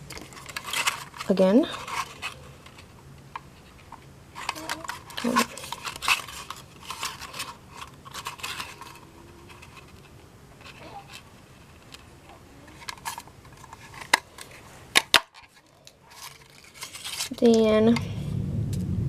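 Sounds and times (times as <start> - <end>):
cardstock rustling and scraping: 0.1 - 17.7.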